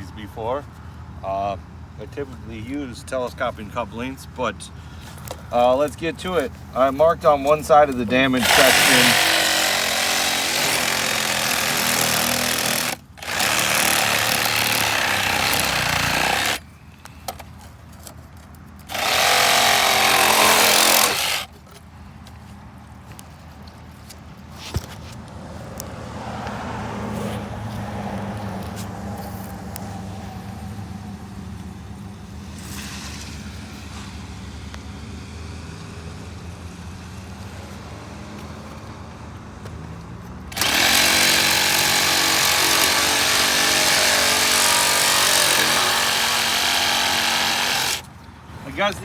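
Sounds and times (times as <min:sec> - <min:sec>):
power saw cutting pipe: 0:06.8 - 0:16.6, 0:18.9 - 0:21.6, 0:40.5 - 0:48.1.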